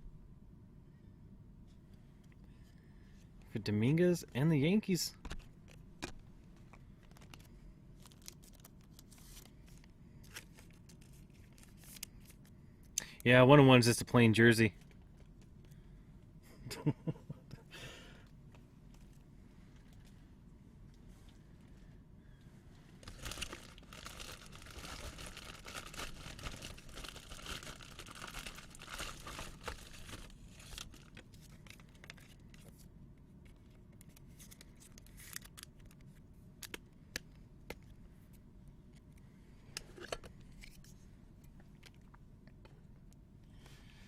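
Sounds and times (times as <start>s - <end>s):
wrapper tearing and crinkling: 8.0s - 9.5s, 23.0s - 32.4s, 34.4s - 35.9s.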